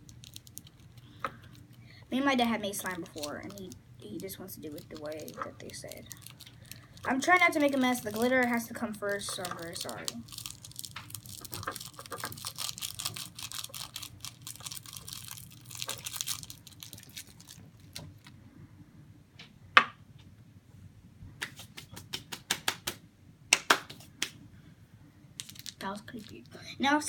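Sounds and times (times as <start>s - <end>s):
glitter rattling into a cup: 0.0s - 18.3s, 25.4s - 26.6s.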